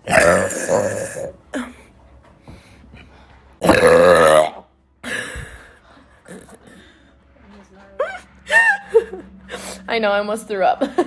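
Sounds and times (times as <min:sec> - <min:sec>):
woman burping: 0:00.0 - 0:01.9, 0:03.6 - 0:05.6, 0:06.2 - 0:06.8.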